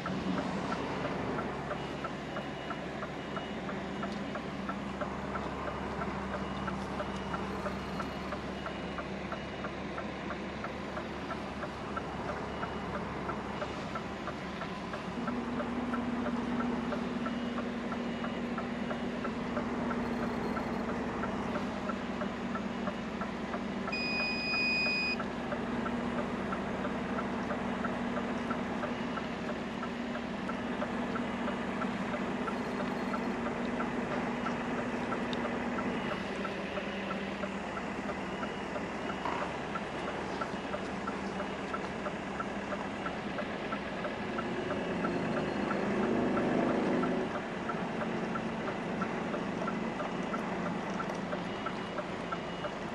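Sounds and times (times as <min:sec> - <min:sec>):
diesel lorry engine running: 0:00.0 - 0:52.9
electronic beep: 0:20.0 - 0:20.9, 0:23.9 - 0:25.2, 0:32.5 - 0:33.4.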